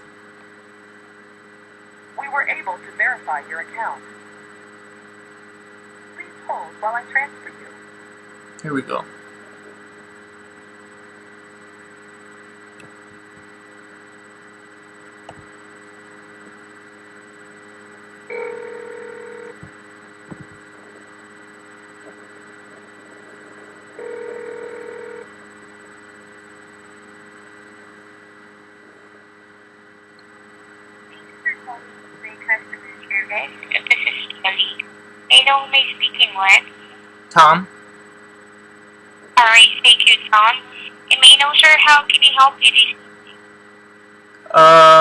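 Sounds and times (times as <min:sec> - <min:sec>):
phone line hum: 0:09.4 - 0:45.0.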